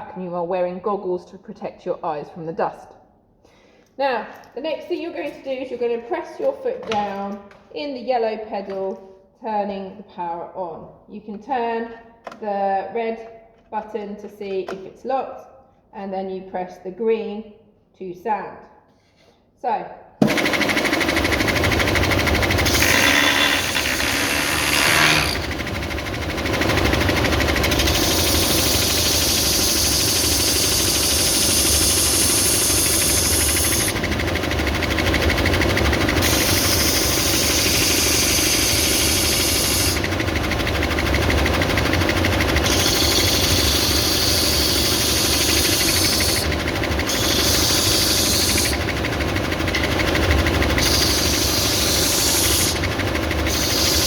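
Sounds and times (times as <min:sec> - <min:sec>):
belt sander humming: 0:20.2 - 0:54.0
wood being sanded: 0:20.2 - 0:54.0.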